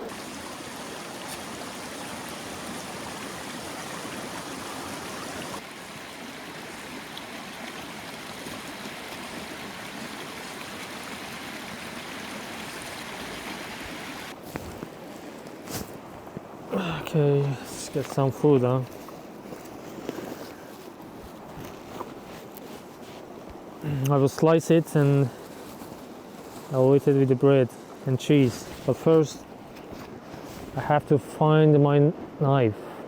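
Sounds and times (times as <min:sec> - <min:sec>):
river water flowing: 0:00.0 - 0:31.6.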